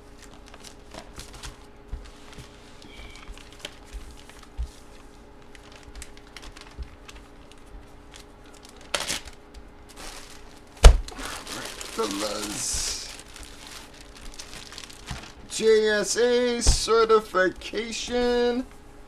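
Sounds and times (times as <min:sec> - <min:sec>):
card packaging clicks and rustles: 0:00.0 - 0:15.8.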